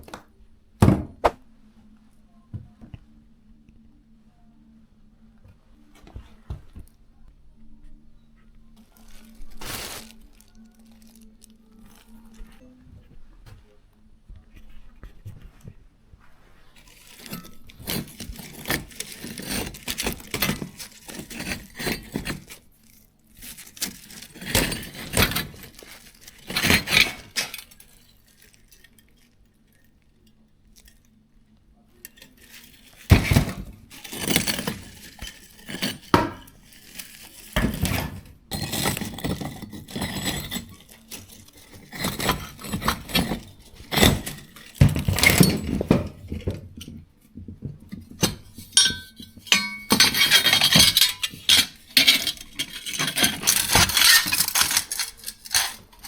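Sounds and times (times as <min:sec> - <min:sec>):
hard objects clinking and clattering: 0:09.0 - 0:12.6, 0:16.8 - 0:30.0, 0:32.0 - 0:56.0.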